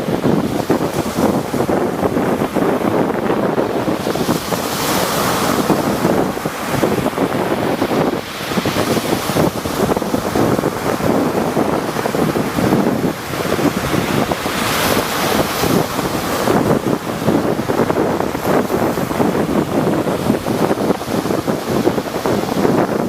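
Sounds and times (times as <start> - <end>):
waves breaking: 0.0 - 23.0
wind buffeting microphone: 0.0 - 23.0.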